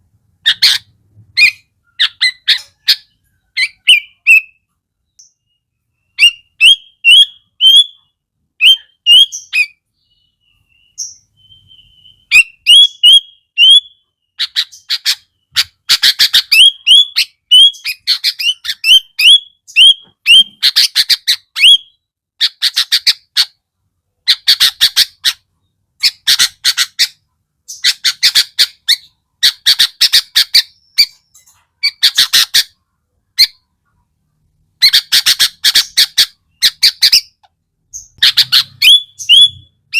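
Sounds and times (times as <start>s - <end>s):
bird raspy chattering: 0.4s - 4.6s, 6.1s - 9.8s, 11.8s - 23.6s, 24.2s - 33.7s, 34.8s - 39.9s.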